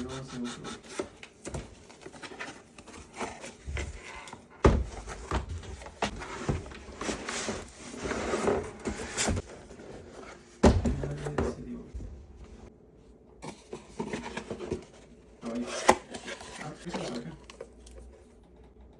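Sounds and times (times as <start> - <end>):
cardboard scraping and sliding: 2.1 - 11.2.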